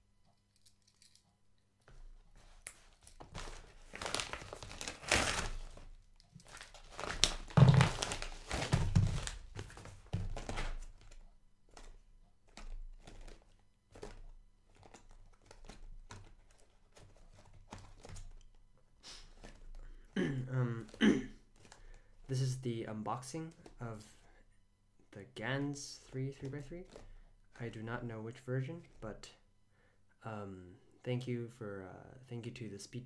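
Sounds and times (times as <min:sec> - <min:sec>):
packaging crinkling: 0:02.4 - 0:18.6.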